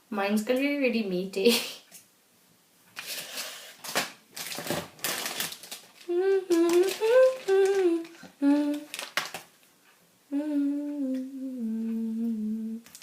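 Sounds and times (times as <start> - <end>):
packaging rustling and crinkling: 3.0 - 9.6
woman humming: 6.1 - 9.0, 10.3 - 12.9.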